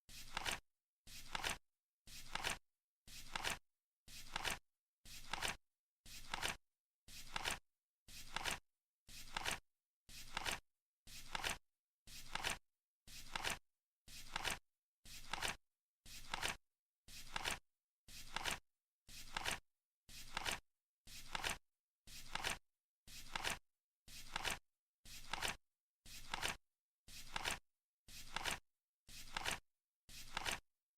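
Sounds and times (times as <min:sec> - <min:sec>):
flip clock cards flipping: 0:00.2 - 0:00.6, 0:01.2 - 0:01.6, 0:02.2 - 0:02.6, 0:03.2 - 0:03.6, 0:04.2 - 0:04.6, 0:05.2 - 0:05.6, 0:06.2 - 0:06.6, 0:07.3 - 0:07.6, 0:08.3 - 0:08.6, 0:09.3 - 0:09.6, 0:10.3 - 0:10.6, 0:11.3 - 0:11.6, 0:12.3 - 0:12.6, 0:13.3 - 0:13.6, 0:14.3 - 0:14.6, 0:15.2 - 0:15.6, 0:16.2 - 0:16.6, 0:17.3 - 0:17.6, 0:18.3 - 0:18.6, 0:19.3 - 0:19.6, 0:20.3 - 0:20.6, 0:21.3 - 0:21.6, 0:22.3 - 0:22.6, 0:23.3 - 0:23.6, 0:24.3 - 0:24.6, 0:25.2 - 0:25.6, 0:26.2 - 0:26.6, 0:27.3 - 0:27.6, 0:28.3 - 0:28.6, 0:29.2 - 0:29.6, 0:30.2 - 0:30.6.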